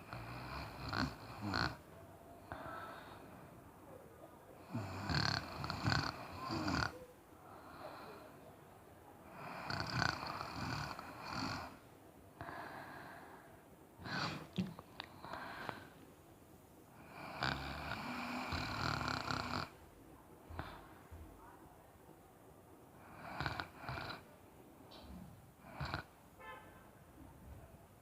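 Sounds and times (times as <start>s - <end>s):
quiet breaths: 0.0s - 28.0s
person snoring: 0.1s - 1.8s, 4.6s - 7.0s, 9.3s - 11.8s, 17.0s - 19.8s.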